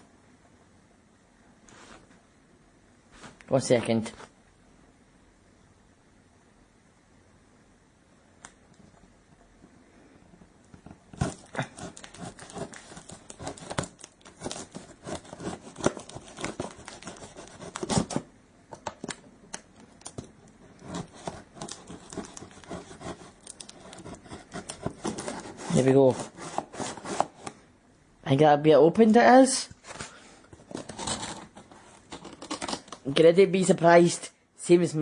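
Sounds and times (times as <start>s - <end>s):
tape tearing: 11.1s - 18.3s, 20.0s - 27.5s, 30.7s - 33.1s
scissors cutting tape on cardboard: 11.2s - 18.2s.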